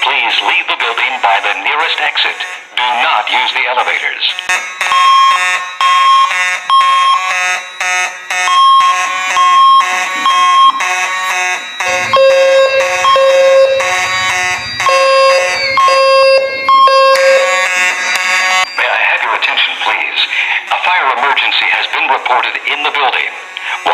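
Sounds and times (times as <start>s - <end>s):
pulsing fire alarm tone: 4.5s - 18.9s.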